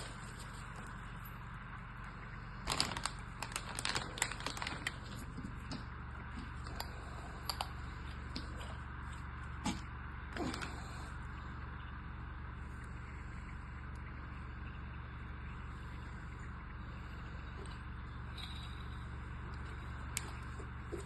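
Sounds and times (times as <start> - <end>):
steady low hum: 0.0 - 21.0
packaging clicks and rustles: 2.6 - 5.8.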